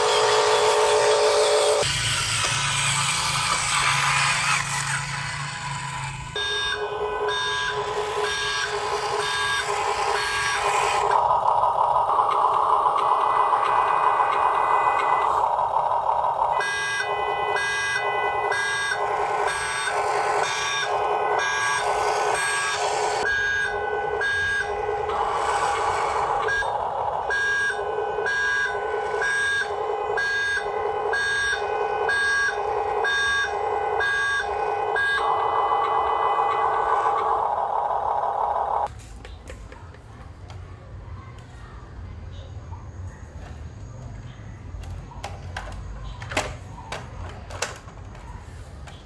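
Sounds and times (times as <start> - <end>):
small electric motors whining: 0.0 - 30.8
electronic reversing beeps: 6.3 - 38.9.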